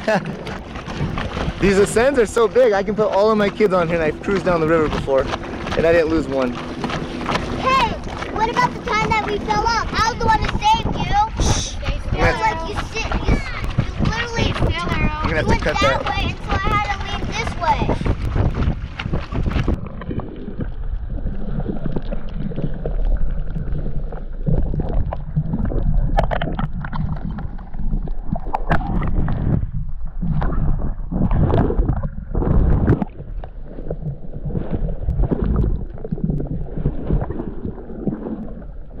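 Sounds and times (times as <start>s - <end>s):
wind buffeting microphone: 0.0s - 22.0s, 24.5s - 39.0s
water splashing against hull: 0.0s - 39.0s
knocks on hull: 11.9s - 19.8s.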